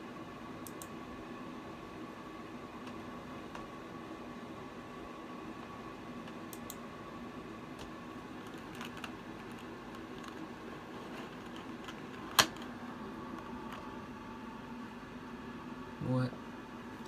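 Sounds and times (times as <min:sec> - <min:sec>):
electrical hum: 0:00.0 - 0:17.0.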